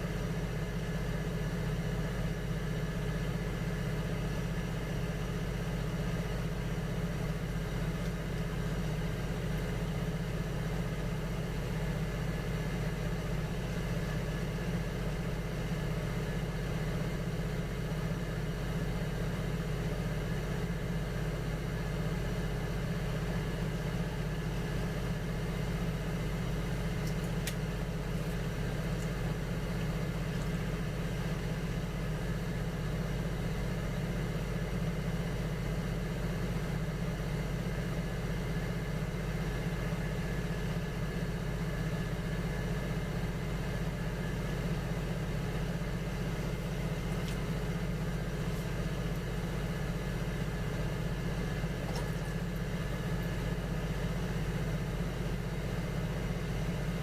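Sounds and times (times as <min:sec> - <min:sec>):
potter's wheel motor humming: 0:22.1 - 0:36.1, 0:41.6 - 0:57.0.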